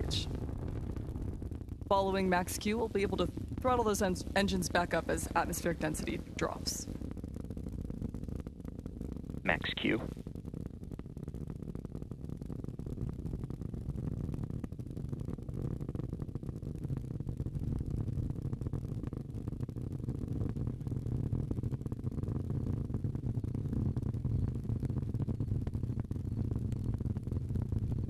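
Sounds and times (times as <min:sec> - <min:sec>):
rocket engines rumbling: 0:00.0 - 0:00.6, 0:01.9 - 0:07.1, 0:09.5 - 0:10.1.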